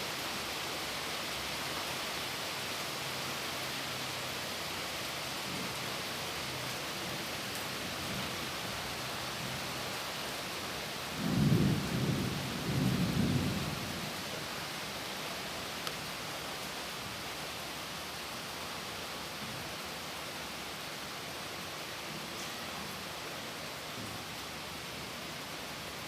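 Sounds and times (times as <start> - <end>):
steady rain falling: 0.0 - 26.0
low rumble of thunder: 11.1 - 14.2.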